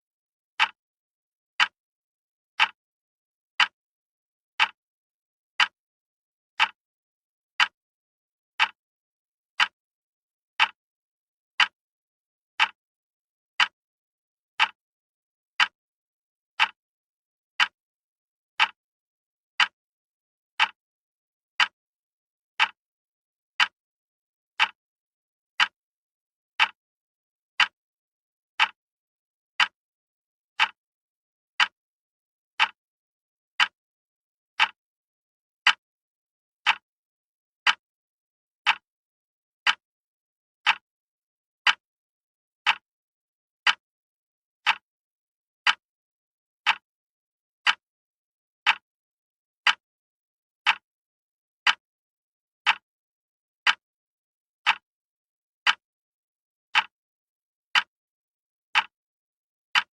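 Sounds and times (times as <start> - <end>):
wall clock ticking: 0.6 - 0.8, 1.6 - 1.8, 4.6 - 4.8, 6.6 - 6.8, 7.6 - 7.8, 8.6 - 8.8, 10.6 - 10.8, 12.6 - 12.8, 13.6 - 13.8, 14.6 - 14.8, 15.6 - 15.8, 16.6 - 16.8, 17.6 - 17.8, 18.6 - 18.8, 20.6 - 20.8, 21.6 - 21.8, 22.6 - 22.8, 24.6 - 24.8, 26.6 - 26.8, 28.6 - 28.8, 30.6 - 30.8, 31.6 - 31.8, 32.6 - 32.8, 34.6 - 34.8, 35.6 - 35.8, 36.6 - 36.8, 37.6 - 37.8, 38.6 - 38.8, 39.6 - 39.8, 40.6 - 40.8, 41.6 - 41.8, 42.6 - 42.9, 43.6 - 43.8, 44.6 - 44.8, 45.6 - 45.8, 46.6 - 46.8, 47.6 - 47.8, 48.6 - 48.9, 49.6 - 49.8, 50.6 - 50.9, 51.6 - 51.8, 52.6 - 52.9, 53.6 - 53.8, 54.6 - 54.9, 56.7 - 56.9, 57.7 - 57.9, 58.7 - 59.0.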